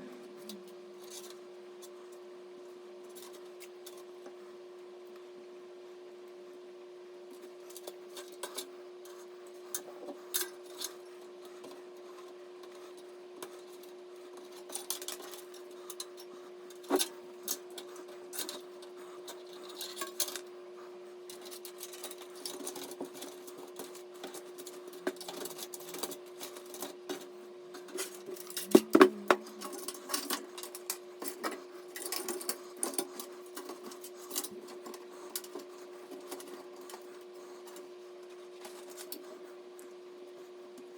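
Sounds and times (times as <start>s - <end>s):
steady hum: 27.8s - 37.8s
knocks: 28.7s - 29.5s.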